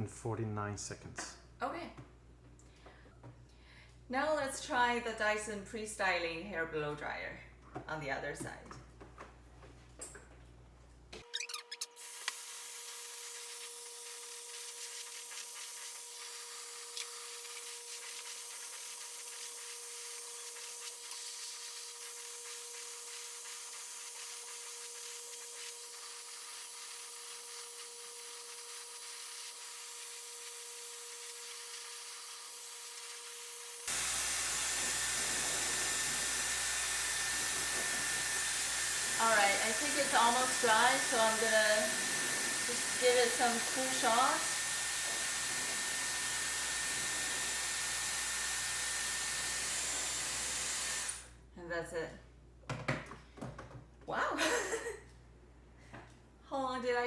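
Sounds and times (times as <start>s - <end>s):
hair dryer blowing air: 33.7s - 51.3s.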